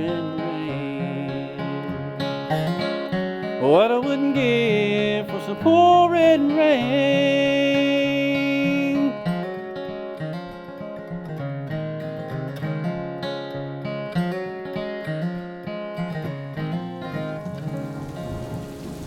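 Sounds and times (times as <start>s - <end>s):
acoustic guitar picking and strumming: 0.0s - 19.0s.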